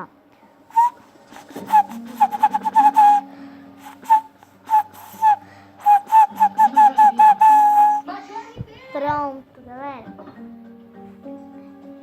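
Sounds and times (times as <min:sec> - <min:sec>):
toy whistle toots: 0:00.7 - 0:08.0.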